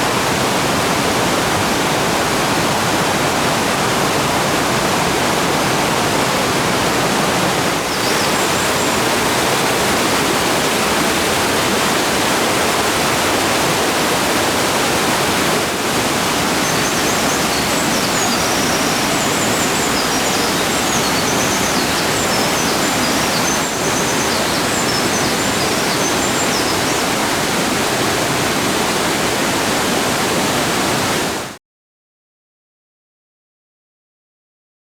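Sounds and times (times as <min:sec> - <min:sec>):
mountain stream rushing: 0:00.0 - 0:31.6
songbirds twittering: 0:07.9 - 0:27.6.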